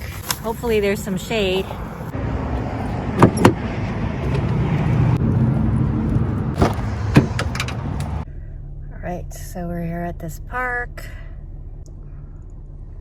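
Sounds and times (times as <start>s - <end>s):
minivan engine and road rumble: 0.0s - 13.0s
sharp clicks and knocks: 6.6s - 8.2s.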